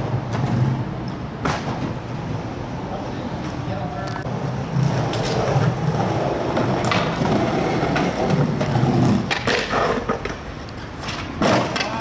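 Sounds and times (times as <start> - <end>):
skateboard wheels rolling on pavement: 0.0 - 12.0
skateboard clacks: 4.2 - 12.0.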